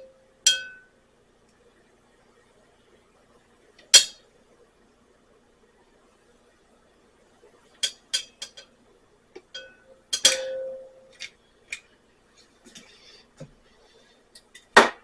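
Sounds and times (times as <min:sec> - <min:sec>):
glass objects clinking and tapping: 0:00.5 - 0:00.9, 0:07.8 - 0:08.7, 0:09.4 - 0:11.3.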